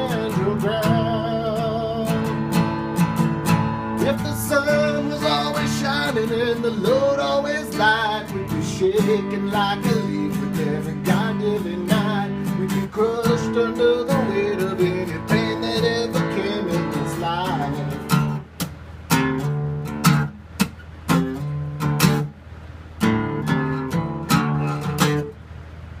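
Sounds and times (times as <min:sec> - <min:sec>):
acoustic guitar strumming chords: 0:00.0 - 0:25.4
person singing: 0:04.0 - 0:18.0.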